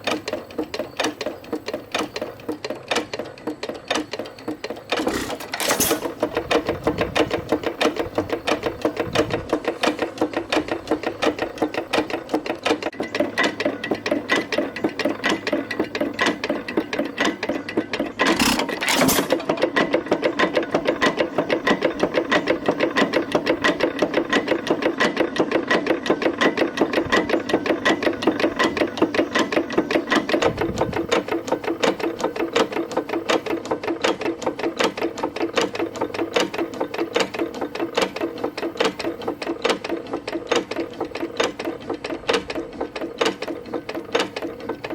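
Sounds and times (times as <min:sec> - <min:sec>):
engine running: 0:00.0 - 0:44.9
gears clanking: 0:04.6 - 0:12.8, 0:16.2 - 0:21.3
connecting rod knocking: 0:04.9 - 0:06.6, 0:18.1 - 0:19.6.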